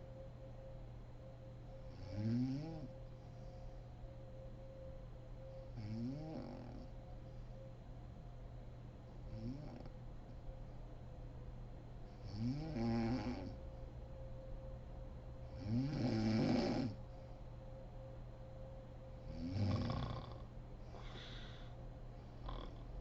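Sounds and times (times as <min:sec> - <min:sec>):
woman snoring: 0:01.9 - 0:02.9, 0:05.8 - 0:06.9, 0:09.3 - 0:09.9, 0:12.2 - 0:13.6, 0:15.6 - 0:17.0, 0:19.3 - 0:21.7, 0:22.4 - 0:23.0
soft breath out: 0:20.9 - 0:21.8.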